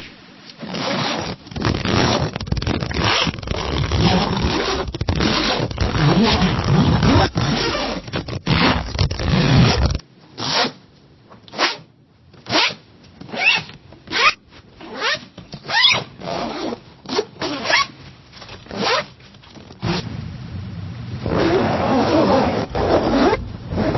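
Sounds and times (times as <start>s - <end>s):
zipper being zipped: 0.6s - 10.8s, 12.5s - 18.0s, 18.7s - 19.2s, 19.8s - 20.1s, 21.2s - 23.9s.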